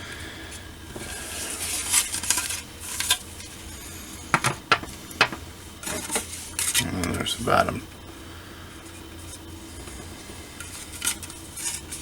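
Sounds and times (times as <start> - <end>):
plastic parts rustling: 1.4 - 3.2, 10.6 - 12.0.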